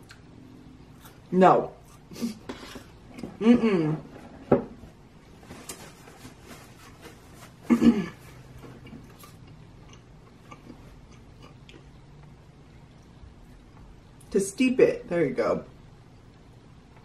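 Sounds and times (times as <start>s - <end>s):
eating and mouth noises: 8.8s - 12.0s.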